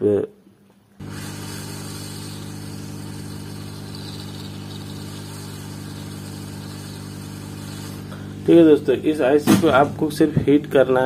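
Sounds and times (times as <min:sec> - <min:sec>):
low electrical hum: 0:00.0 - 0:11.0
hot air blast hissing: 0:01.0 - 0:08.8.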